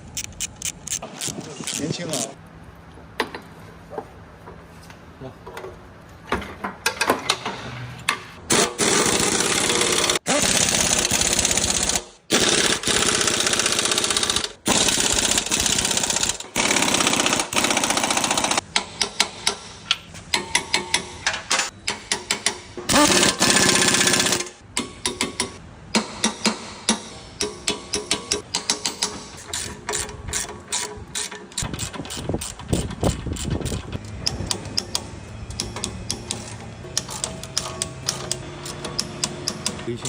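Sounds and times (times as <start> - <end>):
pneumatic impact wrench hammering: 8.5 - 39.8.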